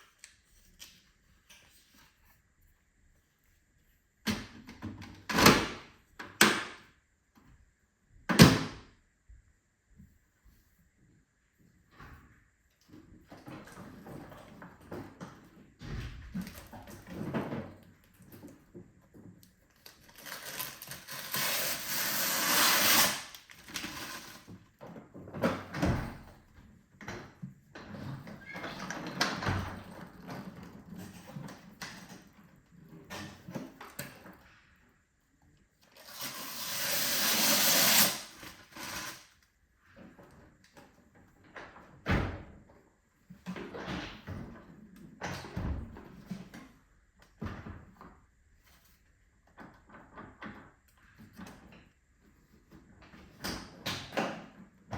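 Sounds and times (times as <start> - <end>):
packaging scraping and rustling: 19.8 - 24.5, 36.0 - 39.3.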